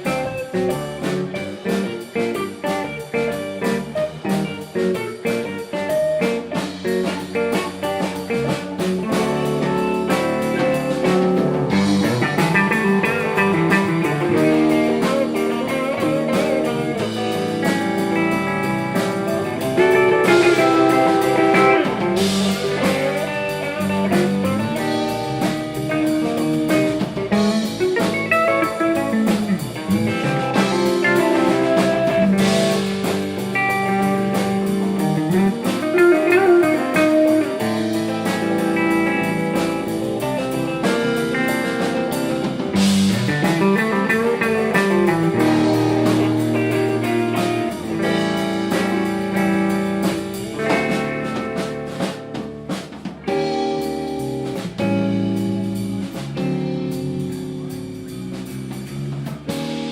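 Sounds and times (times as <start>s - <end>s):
blues guitar: 0.0s - 59.9s
drums keeping steady beat: 0.0s - 59.9s.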